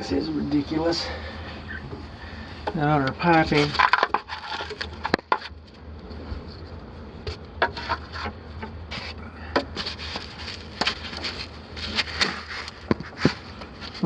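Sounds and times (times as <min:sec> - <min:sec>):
steady low hum: 0:00.0 - 0:14.0
handling knocks and scrapes: 0:02.7 - 0:05.6, 0:06.2 - 0:14.0.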